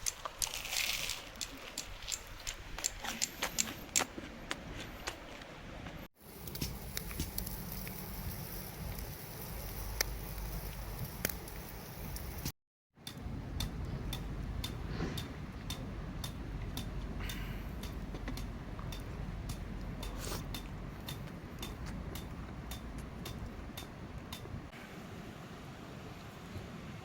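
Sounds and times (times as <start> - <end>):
regular ticking: 6.2 - 24.7.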